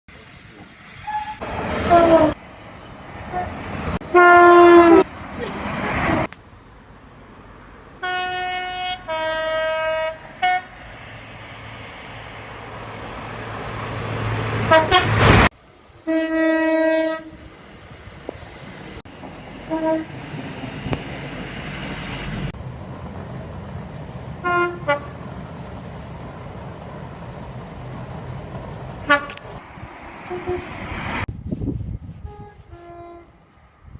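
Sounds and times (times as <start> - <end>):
passing train rumble: 0.1 - 33.9
two-tone train horn: 1.0 - 2.4, 3.3 - 5.1, 8.0 - 10.8, 14.7 - 15.4, 16.0 - 17.4, 19.7 - 20.1, 24.4 - 25.2, 29.0 - 29.4, 30.2 - 30.8, 32.2 - 33.4
train horn blasts: 1.1 - 2.4, 3.3 - 5.1, 8.0 - 10.8, 14.7 - 17.4, 19.7 - 20.1, 24.4 - 25.2, 29.0 - 29.5, 30.2 - 30.9, 32.2 - 33.4.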